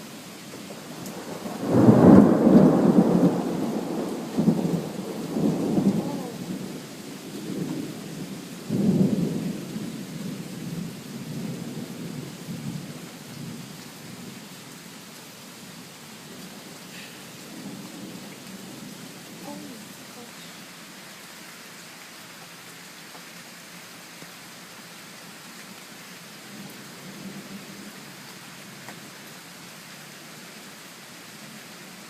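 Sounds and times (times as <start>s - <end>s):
steady rain: 0.0s - 32.0s
thunder rumbling: 0.6s - 13.6s.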